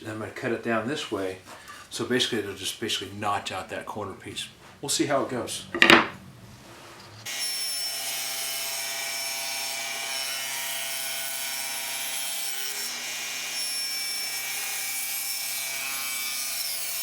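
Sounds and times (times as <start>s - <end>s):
table saw cutting wood: 7.2s - 17.0s.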